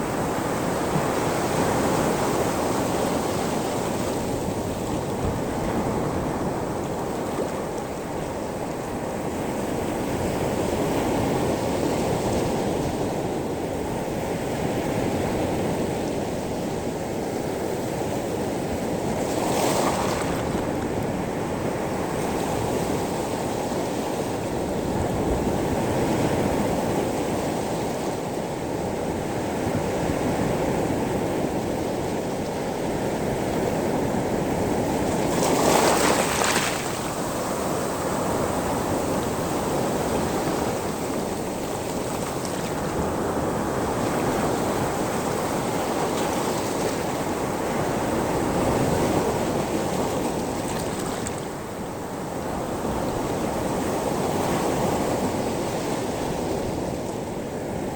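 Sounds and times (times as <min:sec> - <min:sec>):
waves surging over pebbles: 0:18.4 - 0:24.8, 0:31.9 - 0:56.8.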